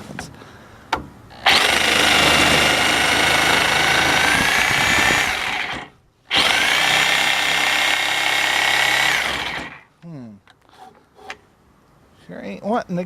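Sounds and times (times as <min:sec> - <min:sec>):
reciprocating saw cutting wood: 0:01.4 - 0:09.9.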